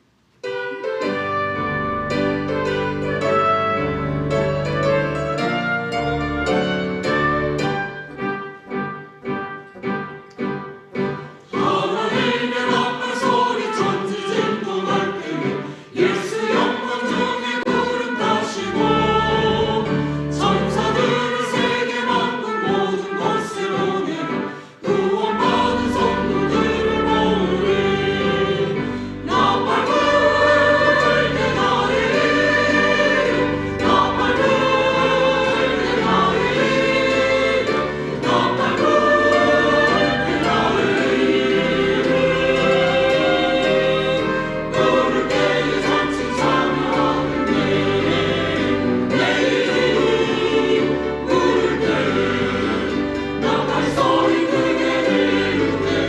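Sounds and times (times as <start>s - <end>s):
piano chords: 0.0s - 56.0s
choir singing: 11.2s - 56.0s.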